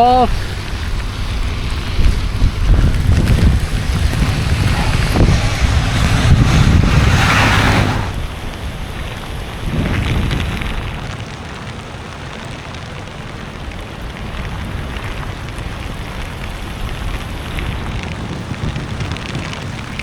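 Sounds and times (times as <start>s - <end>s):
rain: 0.0s - 20.0s
wind buffeting microphone: 0.0s - 20.0s
low rumble: 0.4s - 8.6s.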